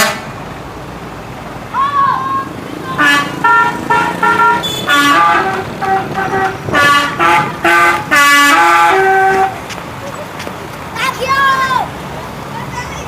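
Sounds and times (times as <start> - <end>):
musical air horn tune: 3.0 - 9.6.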